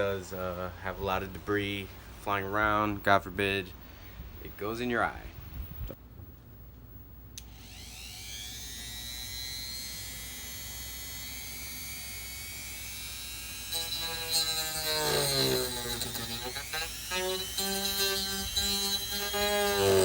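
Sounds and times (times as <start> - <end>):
power tool cutting plastic: 7.4 - 20.0
power tool whining: 7.4 - 20.0.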